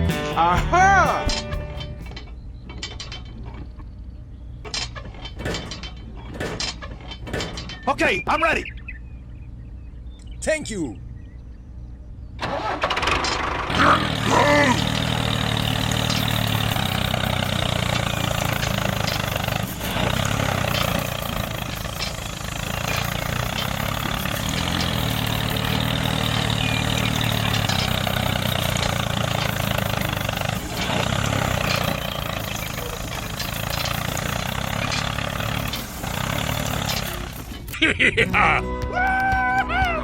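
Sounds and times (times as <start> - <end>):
tractor engine running: 0.0 - 8.8, 12.4 - 40.0.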